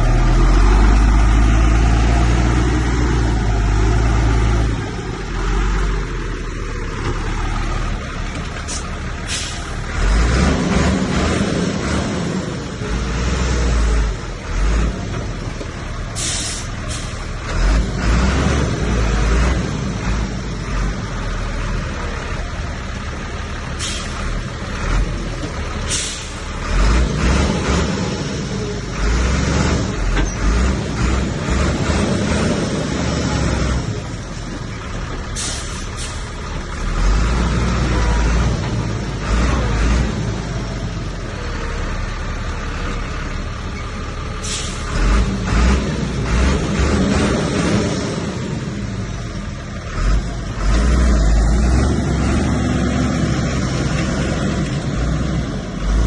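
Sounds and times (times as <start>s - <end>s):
heavy diesel engine rumble: 0.0s - 56.0s
short hisses: 8.7s - 9.7s, 16.2s - 17.2s, 23.8s - 24.2s, 25.9s - 26.4s, 44.4s - 44.9s.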